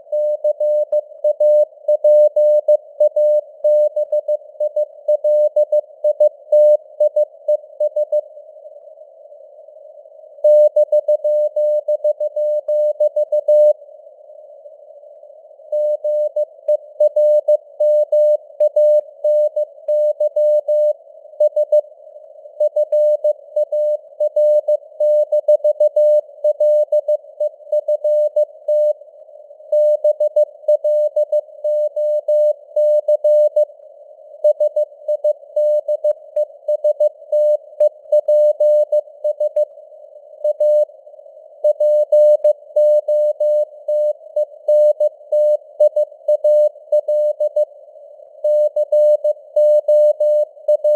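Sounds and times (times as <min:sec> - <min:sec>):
faint radio noise hiss: 0:05.8 - 0:10.4, 0:13.7 - 0:17.0, 0:33.6 - 0:50.7
morse code beeps: 0:48.5 - 0:50.9.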